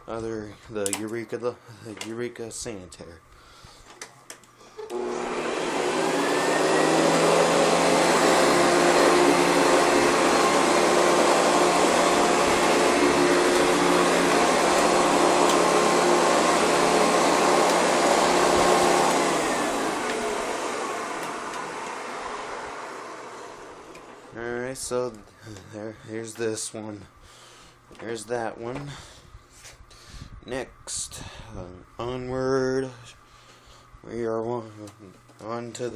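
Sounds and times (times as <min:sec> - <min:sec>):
vacuum cleaner motor running: 0:04.8 - 0:24.6.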